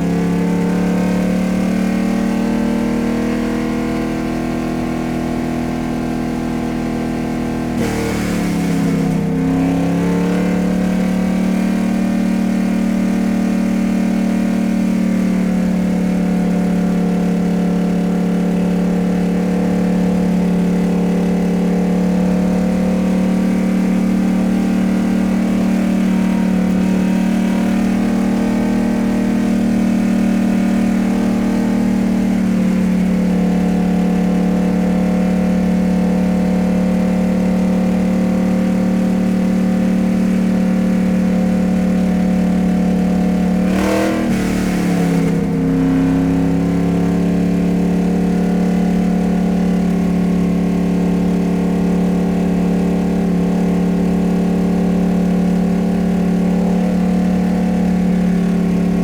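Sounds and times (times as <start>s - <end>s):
vehicle engine running steadily: 0.0s - 59.0s.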